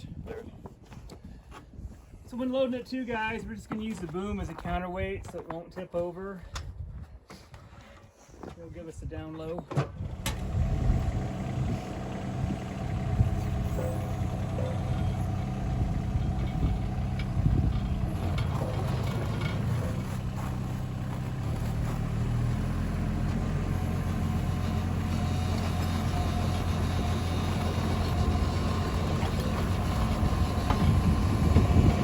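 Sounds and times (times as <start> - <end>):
diesel engine running: 10.0 - 32.0.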